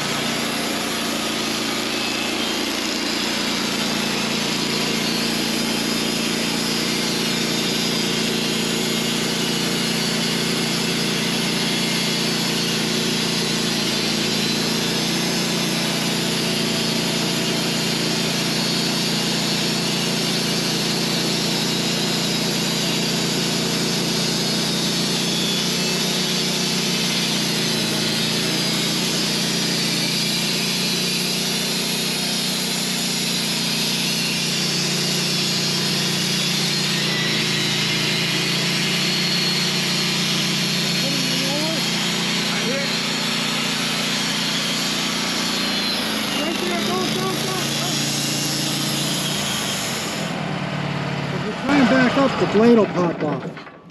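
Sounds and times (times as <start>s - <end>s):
band sawmill sawing log: 0.0s - 53.9s.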